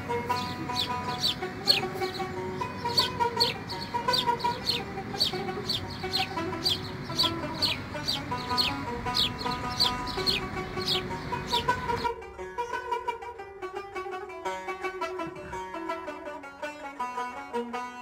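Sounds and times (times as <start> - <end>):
birds chirping: 0.0 - 12.3
soft music with held notes: 0.0 - 18.0.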